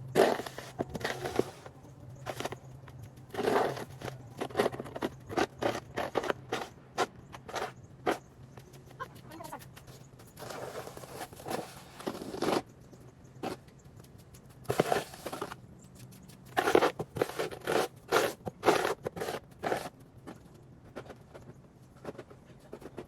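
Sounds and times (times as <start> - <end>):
snow shovel scraping snow: 0.2 - 1.7, 3.4 - 4.8, 10.4 - 12.6, 14.7 - 15.6, 16.6 - 19.9.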